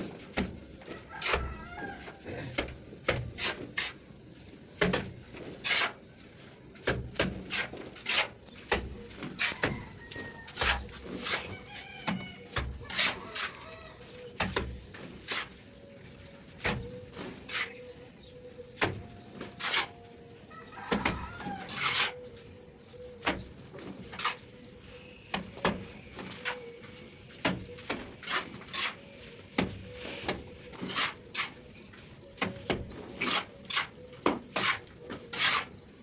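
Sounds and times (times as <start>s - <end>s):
trowel slapping and scraping mortar: 1.2s - 1.5s, 2.5s - 9.9s, 10.5s - 15.7s, 16.4s - 17.8s, 18.7s - 20.0s, 21.0s - 22.2s, 23.2s - 24.6s, 27.4s - 36.0s
chickens clucking: 7.7s - 18.4s.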